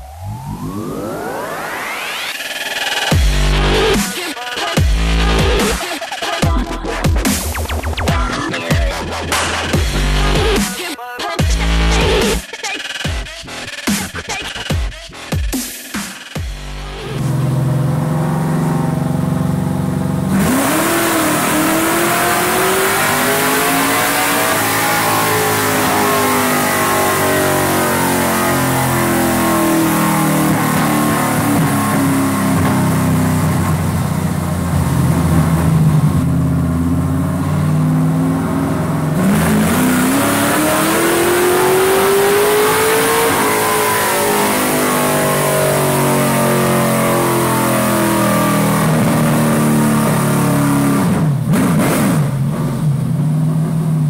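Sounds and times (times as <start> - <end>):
race engine revving: 16.6 - 54.0.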